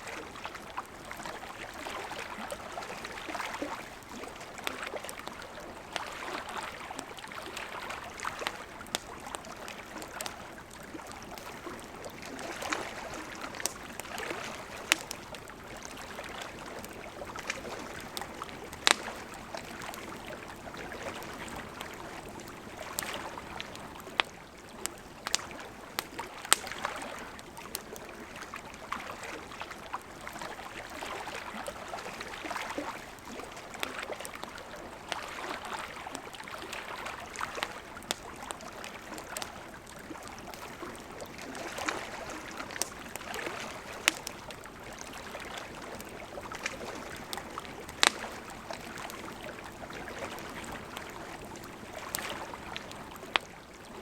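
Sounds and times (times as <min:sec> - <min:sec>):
campfire crackling: 0:00.0 - 0:54.0
lake waves lapping: 0:00.0 - 0:54.0.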